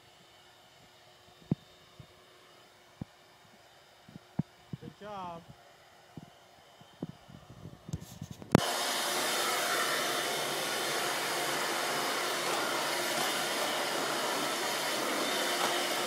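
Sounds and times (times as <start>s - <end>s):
vacuum cleaner motor running: 8.6s - 16.0s.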